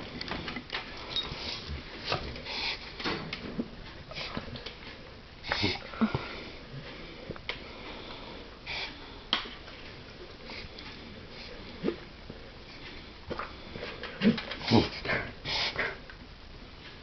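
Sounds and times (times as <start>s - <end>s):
dog snorting and sniffing: 14.2s - 16.0s.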